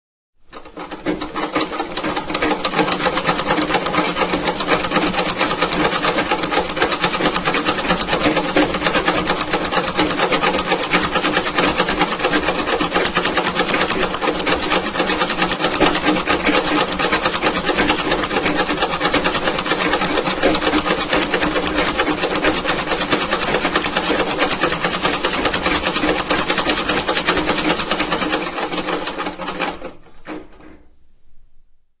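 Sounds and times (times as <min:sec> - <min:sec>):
sewing machine clattering: 0:00.4 - 0:30.9.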